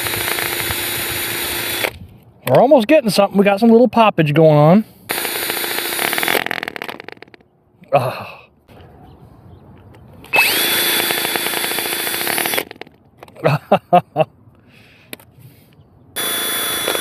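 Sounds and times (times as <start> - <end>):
electric drill whining: 0.0 - 2.0, 5.1 - 7.3, 10.3 - 12.9, 16.2 - 17.0.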